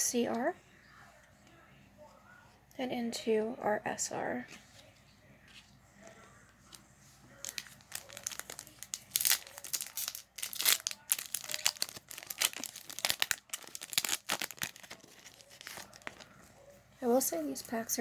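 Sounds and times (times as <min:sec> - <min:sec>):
foil pack tearing and crinkling: 0:07.4 - 0:16.2.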